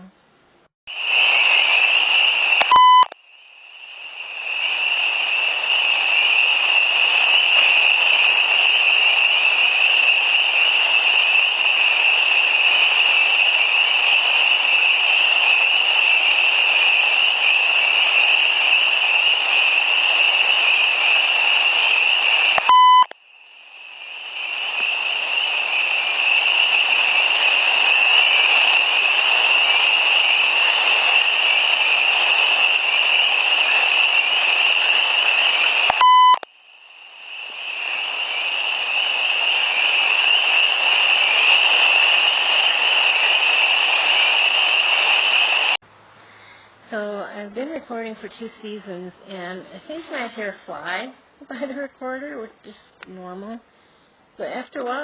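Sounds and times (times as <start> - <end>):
high-pitched background hiss: 0.9 - 55.0
electronic button beeps: 22.6 - 23.1.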